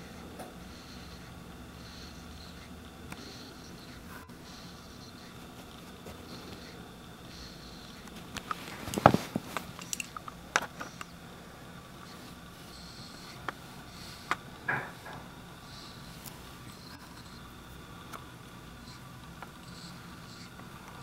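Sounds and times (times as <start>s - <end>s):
faint breaths: 0.0s - 21.0s.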